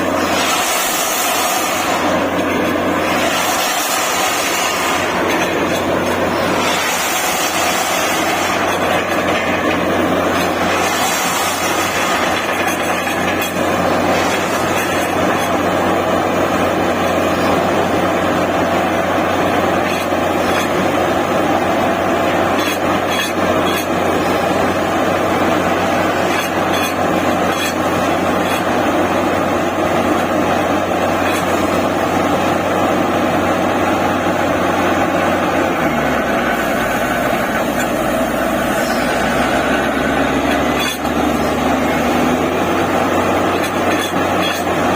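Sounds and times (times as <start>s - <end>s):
drilling rig droning: 0.0s - 44.9s.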